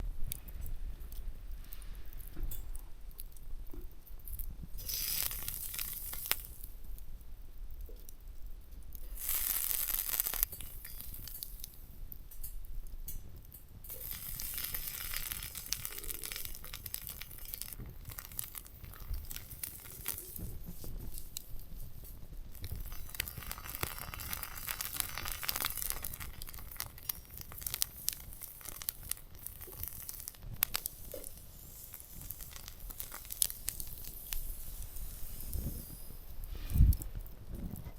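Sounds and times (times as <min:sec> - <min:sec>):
crackling: 0:00.0 - 0:37.9
sausage sizzling in a pan: 0:04.3 - 0:06.9, 0:09.0 - 0:12.0, 0:13.8 - 0:37.6.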